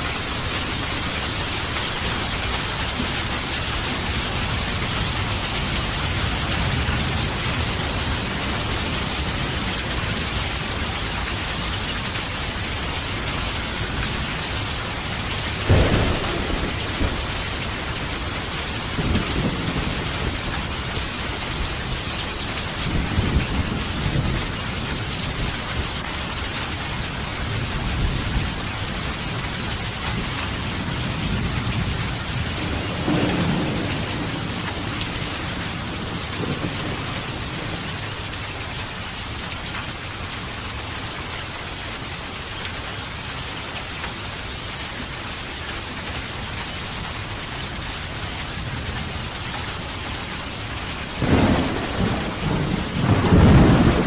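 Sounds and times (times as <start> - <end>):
heavy rainfall: 0.0 - 54.0
thunder clap and rumbles: 12.3 - 38.4, 48.6 - 54.0.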